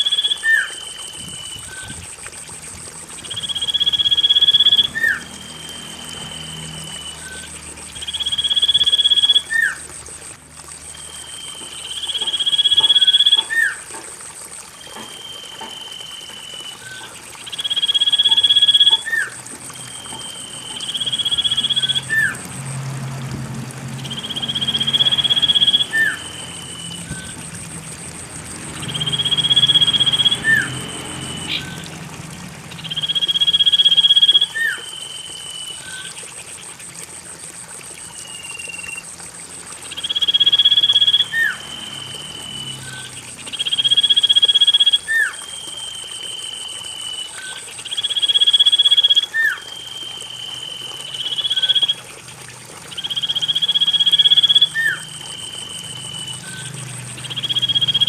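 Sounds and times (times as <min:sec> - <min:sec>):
bird whistling: 0:00.0 - 0:02.0, 0:03.2 - 0:09.8, 0:24.0 - 0:27.4, 0:28.8 - 0:31.9, 0:32.8 - 0:36.1, 0:38.2 - 0:39.0, 0:39.9 - 0:52.0, 0:53.0 - 0:58.0.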